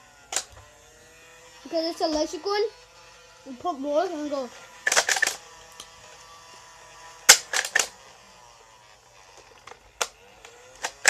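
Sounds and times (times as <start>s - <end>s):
toy blaster motor whir: 0.0s - 11.0s
sharp clacks: 7.3s - 8.0s.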